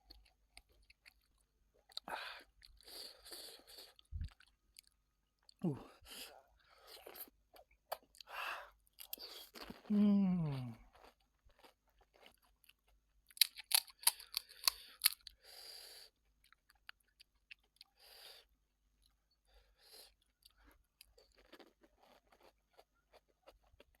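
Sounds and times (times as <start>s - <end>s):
soft chewing: 0.0s - 24.0s
breathy sounds: 2.0s - 4.0s
crisp eating crunches: 8.9s - 15.4s, 20.5s - 24.0s.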